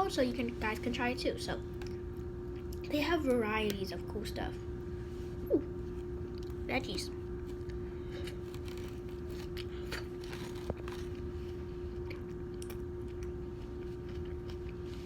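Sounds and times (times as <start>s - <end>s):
steady electrical hum: 0.0s - 15.0s
person chewing noodles: 7.3s - 15.0s.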